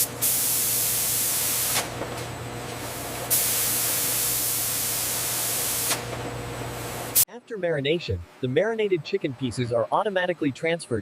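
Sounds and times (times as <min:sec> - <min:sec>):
machine humming: 0:00.0 - 0:07.2
loud hissing: 0:02.8 - 0:06.1.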